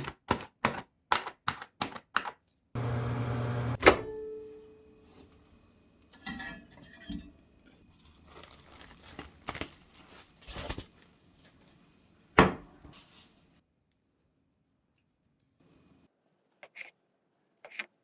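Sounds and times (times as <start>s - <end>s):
utensils and dishes clinking: 6.1s - 7.4s.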